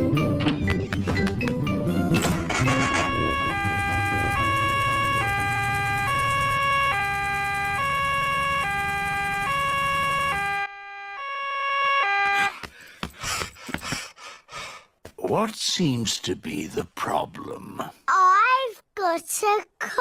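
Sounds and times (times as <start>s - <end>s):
two-tone siren: 2.5s - 12.6s.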